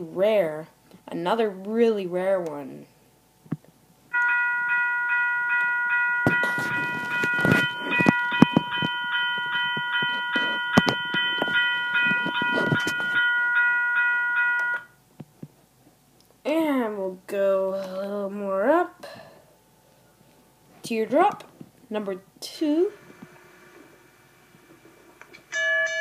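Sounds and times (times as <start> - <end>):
railroad crossing bell ringing: 4.1 - 15.0, 25.5 - 26.0
knocks and clicks: 6.3 - 13.2.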